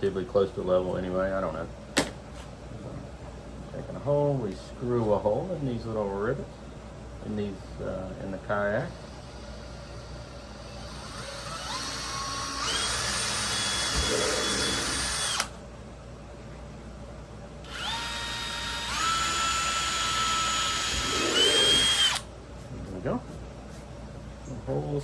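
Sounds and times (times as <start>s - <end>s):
cordless drill whining: 9.0s - 15.6s, 17.6s - 22.3s.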